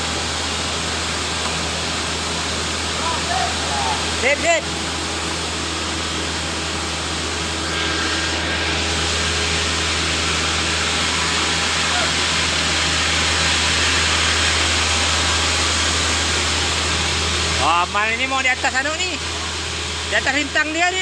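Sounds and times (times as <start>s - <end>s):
machinery humming and hissing: 0.0s - 21.0s.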